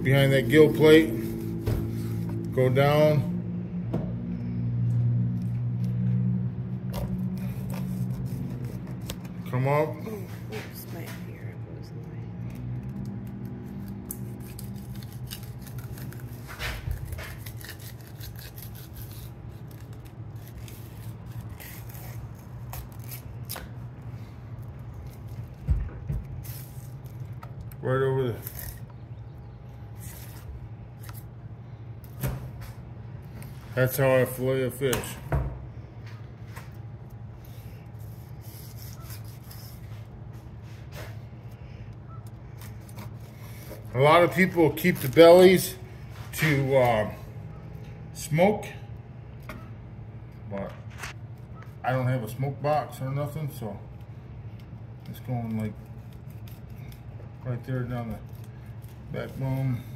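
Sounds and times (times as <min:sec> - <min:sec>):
knife cutting and scraping fish: 0:00.0 - 0:03.0, 0:05.0 - 0:11.4, 0:12.6 - 0:31.4, 0:36.4 - 0:47.1, 0:53.9 - 0:59.9
steady low hum: 0:00.0 - 0:59.9.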